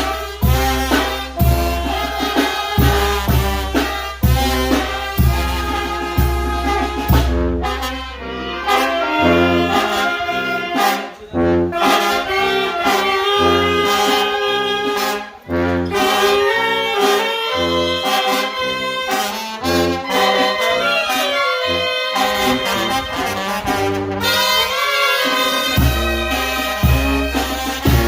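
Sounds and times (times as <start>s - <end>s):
drum and cymbal hits: 0.0s - 7.4s, 25.7s - 28.0s
brass band playing: 0.0s - 28.0s
tuba bass line: 0.0s - 28.0s.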